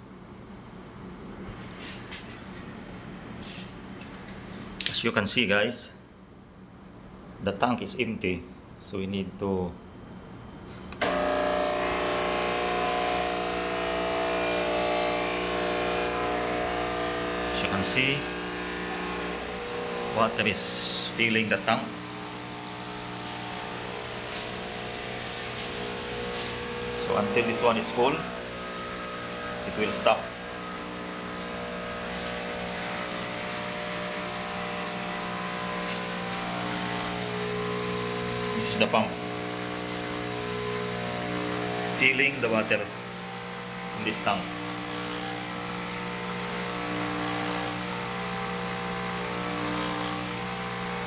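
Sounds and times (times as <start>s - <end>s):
water pump buzzing: 11.0s - 51.0s.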